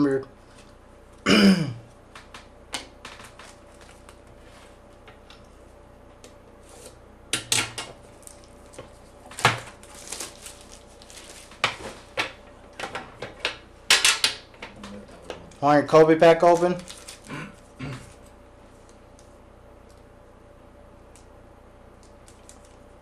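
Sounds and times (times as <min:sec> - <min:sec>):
packaging rustling: 0:03.2 - 0:04.5, 0:08.1 - 0:12.1, 0:16.4 - 0:17.4.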